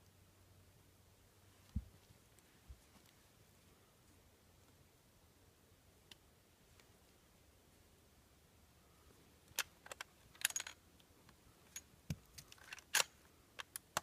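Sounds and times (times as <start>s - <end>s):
rifle bolt clicks and rattles: 9.5s - 10.8s, 11.7s - 14.0s.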